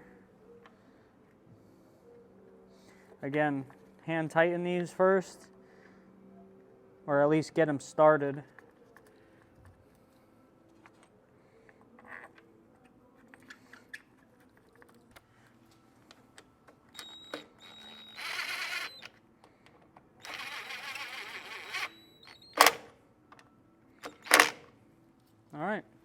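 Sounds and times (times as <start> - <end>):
rapid rattling tool: 20.2 - 21.9
clicks of plastic parts: 22.5 - 24.7.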